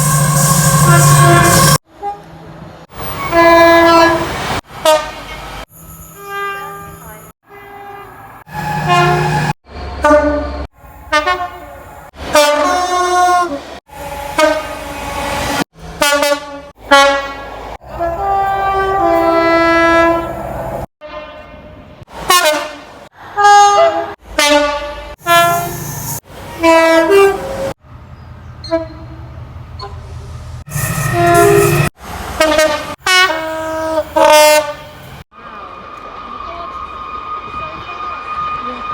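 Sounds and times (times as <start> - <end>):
multi-tone train horn blasts: 0.0 - 2.4, 3.0 - 5.3, 6.1 - 27.8, 30.6 - 35.1
low rumble of train: 0.0 - 38.9.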